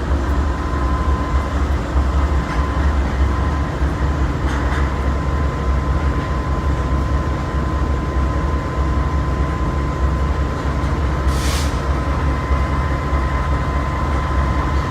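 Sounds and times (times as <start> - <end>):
heavy engine rumbling: 0.0 - 14.9
short hiss: 11.3 - 11.9.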